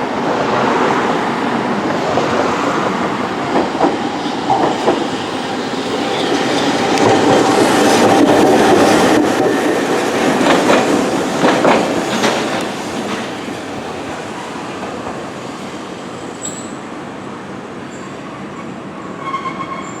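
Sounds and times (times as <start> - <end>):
tram wheels clicking over rail joints: 0.0 - 16.8.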